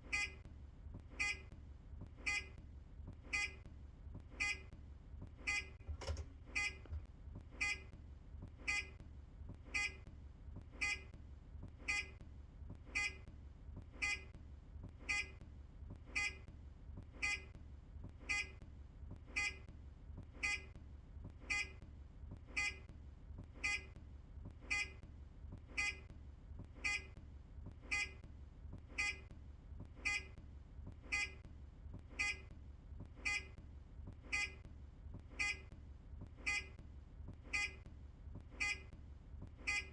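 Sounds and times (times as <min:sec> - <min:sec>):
turn indicator buzzer beeping: 0:00.0 - 0:00.5, 0:01.1 - 0:01.5, 0:02.1 - 0:04.8, 0:05.4 - 0:09.0, 0:09.6 - 0:10.1, 0:10.7 - 0:11.2, 0:11.8 - 0:12.3, 0:12.9 - 0:13.3, 0:13.9 - 0:14.4, 0:15.0 - 0:15.4, 0:16.0 - 0:16.5, 0:17.1 - 0:18.6, 0:19.3 - 0:20.7, 0:21.3 - 0:21.8, 0:22.4 - 0:22.9, 0:23.6 - 0:24.0, 0:24.6 - 0:25.0, 0:25.6 - 0:26.1, 0:26.7 - 0:27.2, 0:27.8 - 0:29.3, 0:29.9 - 0:31.5, 0:32.1 - 0:36.8, 0:37.4 - 0:39.9.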